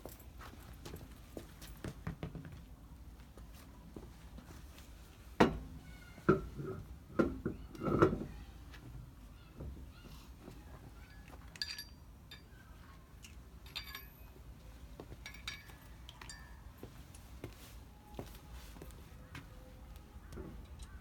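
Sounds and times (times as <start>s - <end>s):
light metallic clinks: 11.0s - 14.4s, 15.0s - 17.4s.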